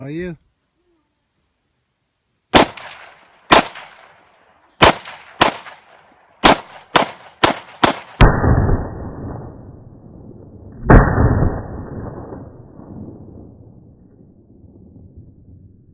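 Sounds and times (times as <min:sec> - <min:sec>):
rifle shots with echo: 0:02.5 - 0:09.8, 0:10.8 - 0:12.9
deep boom: 0:08.2 - 0:15.9
slowed-down muffled rumbling: 0:08.2 - 0:15.9.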